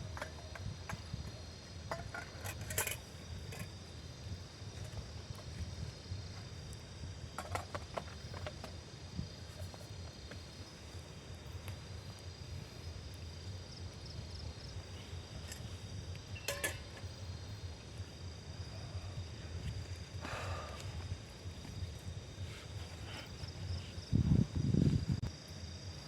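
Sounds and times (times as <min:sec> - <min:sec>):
insects trilling: 0:00.0 - 0:26.0
low steady rumble: 0:08.6 - 0:25.4.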